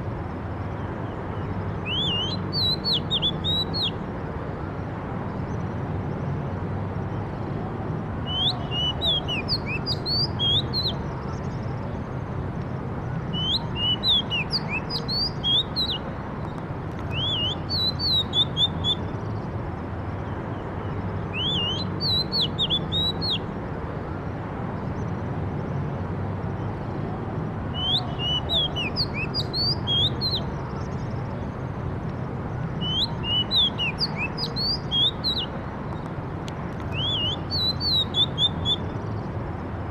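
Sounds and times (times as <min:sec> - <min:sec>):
songbird chirping and whistling: 0:01.4 - 0:04.0, 0:08.2 - 0:11.3, 0:13.3 - 0:16.1, 0:17.1 - 0:19.2, 0:21.3 - 0:23.5, 0:27.7 - 0:30.9, 0:32.8 - 0:35.6, 0:36.9 - 0:39.0.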